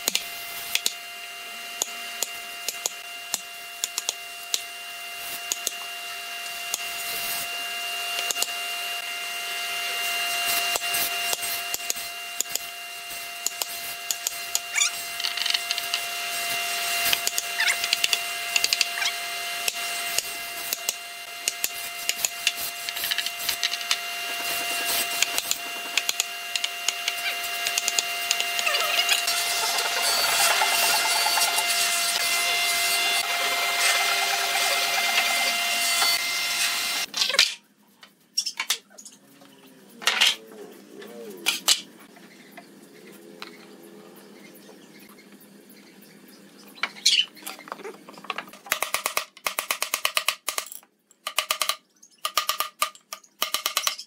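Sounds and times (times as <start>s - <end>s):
steady machine hum: 0.0s - 37.1s, 39.2s - 48.4s
wood sawing or rubbing: 6.3s - 37.2s.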